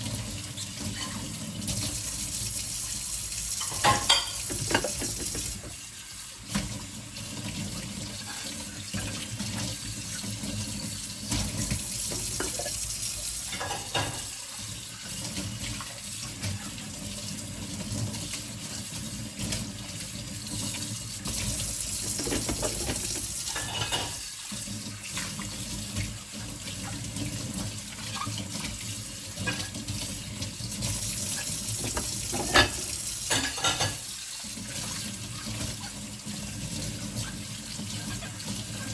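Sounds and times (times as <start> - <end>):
tap water running into sink: 0.0 - 38.9
plates knocking and clinking: 3.6 - 5.8, 12.1 - 12.7, 13.5 - 14.3, 22.0 - 24.2, 31.8 - 34.0.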